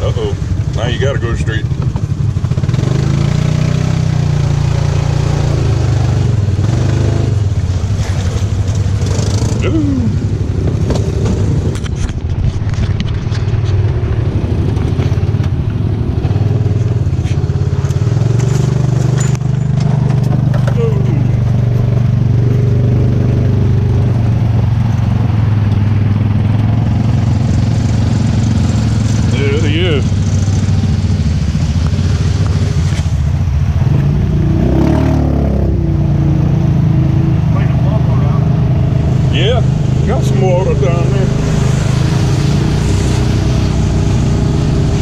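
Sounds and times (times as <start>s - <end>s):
atv engine running: 0.0s - 45.0s
wind noise: 6.2s - 35.8s
tyre noise: 8.0s - 24.7s.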